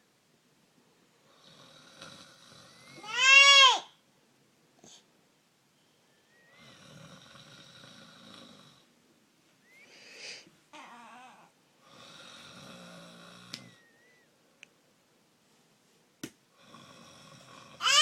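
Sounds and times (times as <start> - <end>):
man snoring: 1.3 - 3.0, 6.5 - 8.8, 11.8 - 13.8, 16.6 - 17.9.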